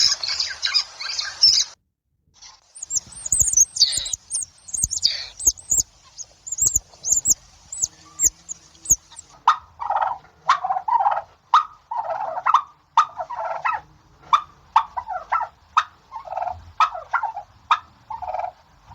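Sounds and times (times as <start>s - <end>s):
small bird chirping: 0.0s - 1.8s, 2.4s - 9.3s
fowl clucking: 2.8s - 18.6s.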